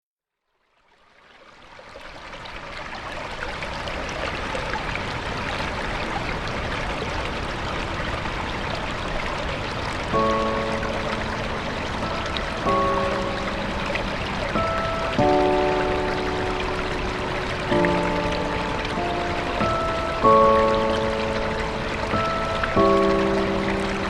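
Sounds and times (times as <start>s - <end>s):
waterfall roaring: 3.6s - 24.0s
soft musical note: 10.2s - 24.0s.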